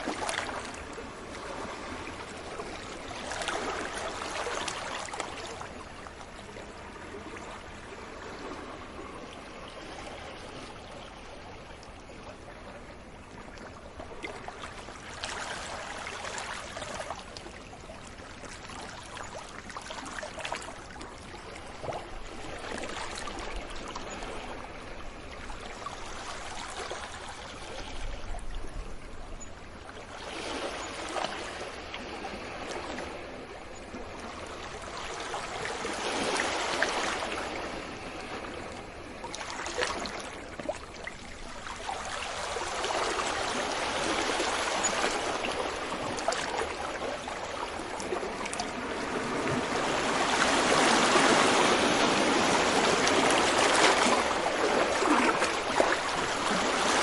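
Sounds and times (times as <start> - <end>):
sea waves washing onto beach: 0.0 - 11.2, 30.1 - 57.0.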